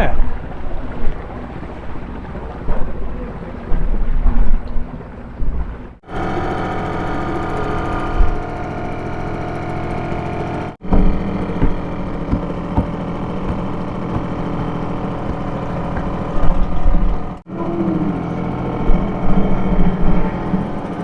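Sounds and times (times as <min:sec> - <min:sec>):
outboard motor running: 0:00.2 - 0:03.6, 0:05.1 - 0:21.0
low thumps: 0:06.3 - 0:17.4.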